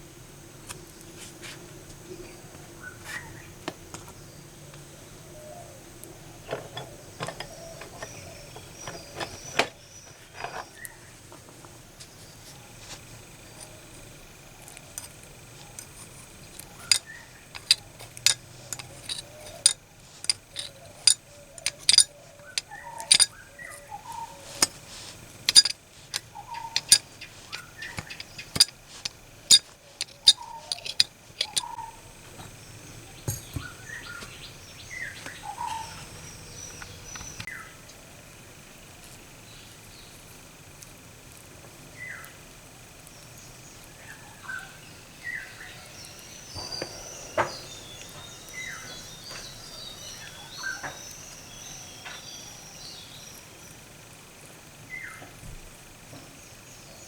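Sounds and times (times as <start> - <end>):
small birds chirping: 2.0 - 11.4, 12.0 - 55.4
metal parts clicking and tapping: 6.4 - 11.0, 14.6 - 31.9.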